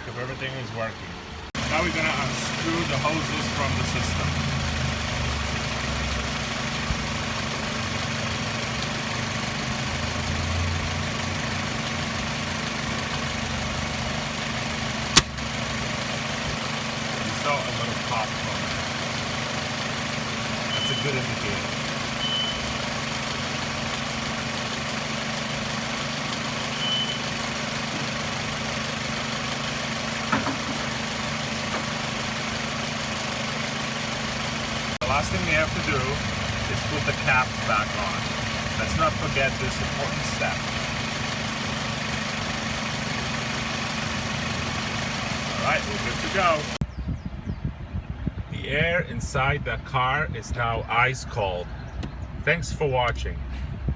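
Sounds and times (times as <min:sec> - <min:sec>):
car engine idling: 0:00.0 - 0:47.0
air conditioning compressor running: 0:01.2 - 0:46.8
high squeak: 0:26.8 - 0:27.3.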